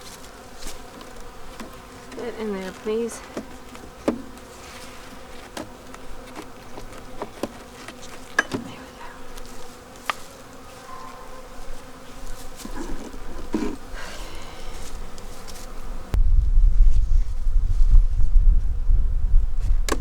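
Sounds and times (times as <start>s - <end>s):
bees buzzing: 0.0s - 16.2s
wooden hive frames knocking: 0.8s - 4.6s, 5.2s - 8.8s.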